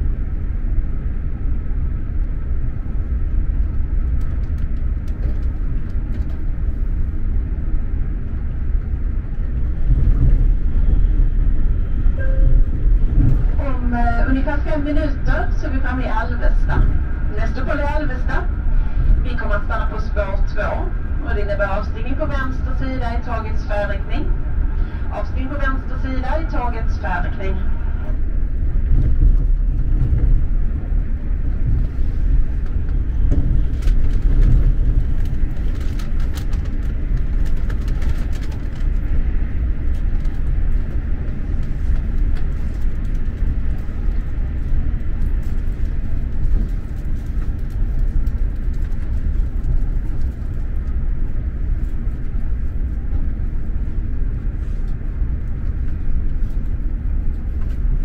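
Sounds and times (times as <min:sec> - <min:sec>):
train wheels rumbling on rails: 0:00.0 - 0:58.0.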